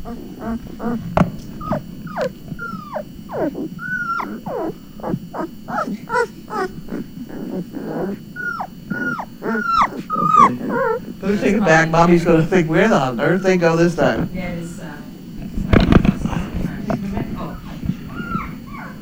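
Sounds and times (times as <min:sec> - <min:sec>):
puppies whimpering and squealing: 0:00.0 - 0:11.8, 0:17.5 - 0:19.0.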